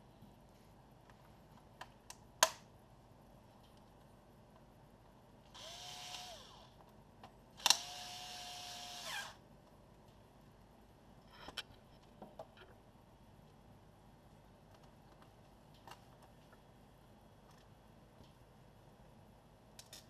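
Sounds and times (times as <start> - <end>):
electric screwdriver motor: 5.6 - 6.7, 7.6 - 9.4
sharp clicks: 7.6 - 7.9.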